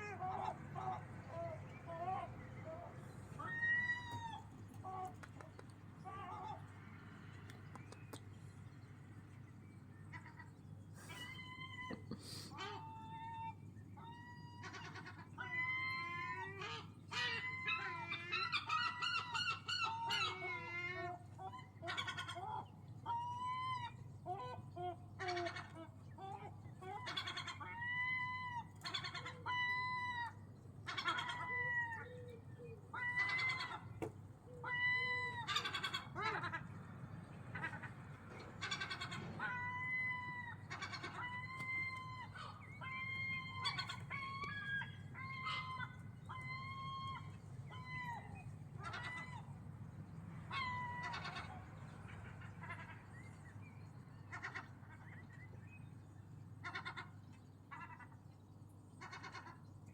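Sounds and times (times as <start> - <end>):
gulls calling: 0.0 - 6.9, 10.0 - 55.9.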